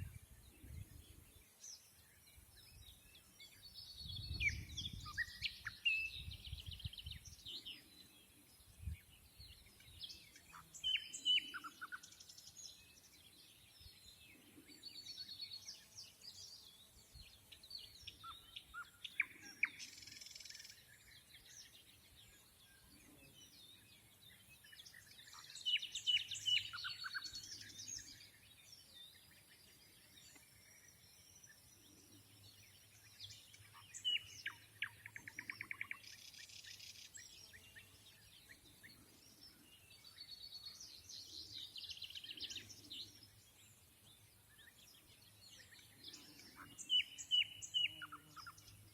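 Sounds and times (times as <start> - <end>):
nightingale singing: 0.0 - 48.9.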